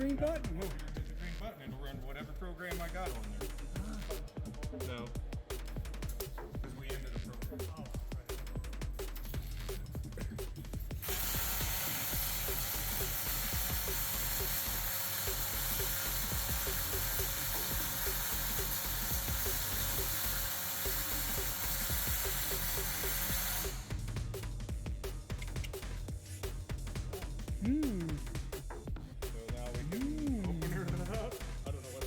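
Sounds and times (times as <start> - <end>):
arc welder crackling: 10.9 - 24.1.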